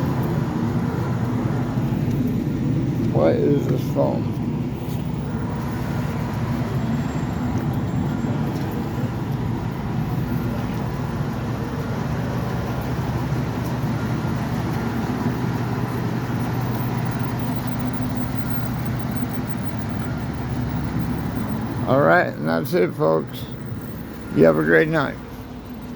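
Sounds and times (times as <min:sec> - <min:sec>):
large diesel engine idling: 0:00.0 - 0:25.9.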